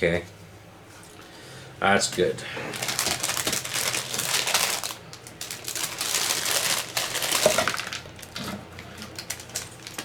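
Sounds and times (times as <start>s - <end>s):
plastic bags crinkling: 2.7s - 10.0s.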